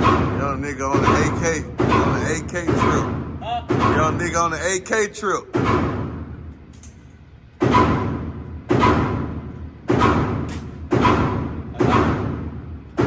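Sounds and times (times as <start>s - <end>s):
rifle shots with echo: 0.0s - 4.5s, 7.6s - 13.0s.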